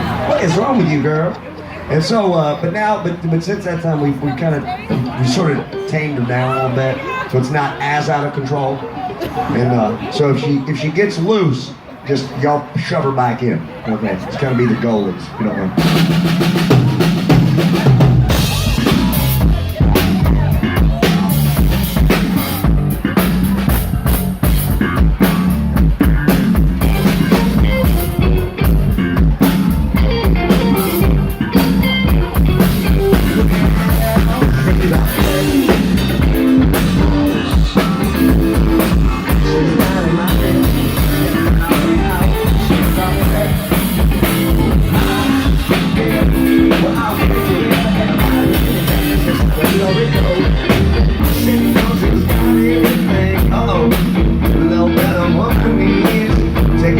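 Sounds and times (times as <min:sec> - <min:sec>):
live rock band playing: 0:04.2 - 0:07.4, 0:15.2 - 0:56.9
drum kit beat: 0:15.8 - 0:56.9.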